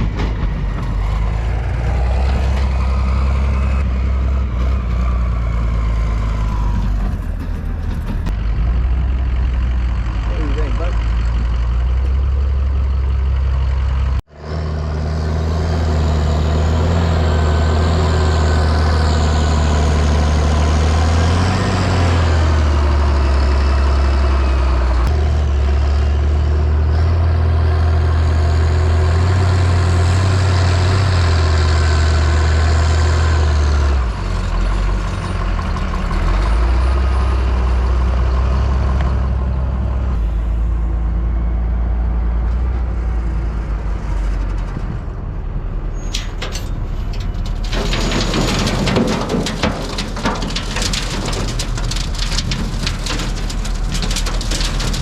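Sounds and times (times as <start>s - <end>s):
heavy engine running: 0.0s - 55.0s.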